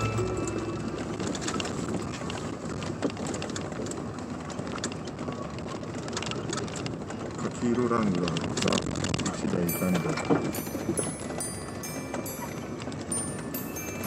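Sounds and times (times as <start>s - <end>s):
vehicle driving noise: 0.0s - 14.0s
small clicks and crackles: 1.2s - 11.4s.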